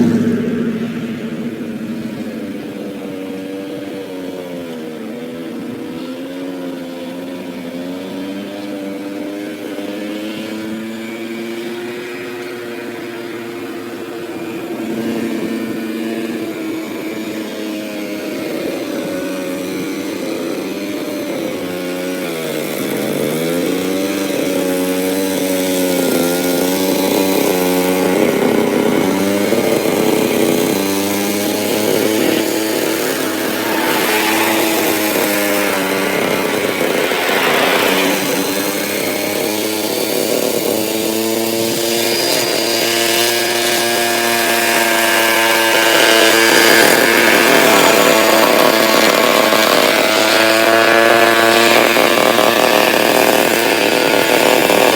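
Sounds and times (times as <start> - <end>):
grass trimmer engine cutting: 0.0 - 54.9.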